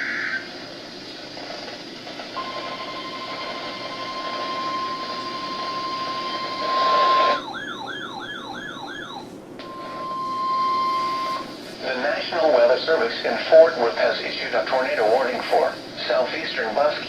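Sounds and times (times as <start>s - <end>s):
noise burst: 0.0s - 7.4s, 9.2s - 17.0s
radio hiss: 0.0s - 7.4s, 9.3s - 17.0s.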